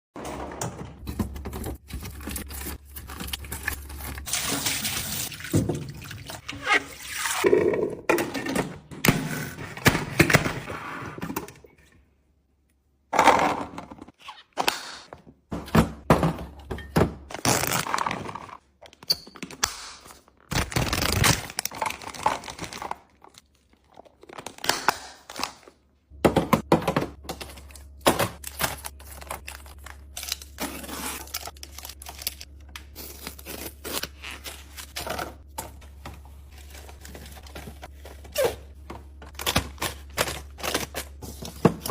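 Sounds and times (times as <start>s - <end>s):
items thunking down: 0.2s - 4.6s, 15.2s - 19.6s, 26.1s - 30.1s.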